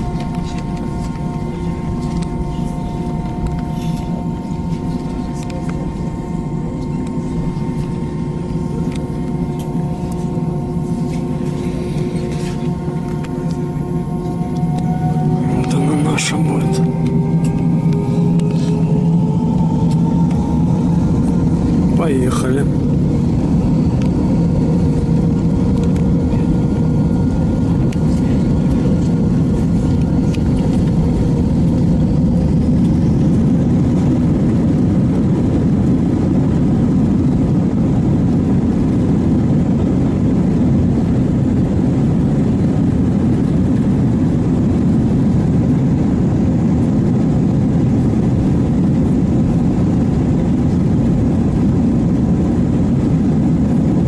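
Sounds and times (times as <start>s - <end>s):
jet engines roaring in cabin: 0.0s - 54.0s
thin steady whine: 0.0s - 54.0s.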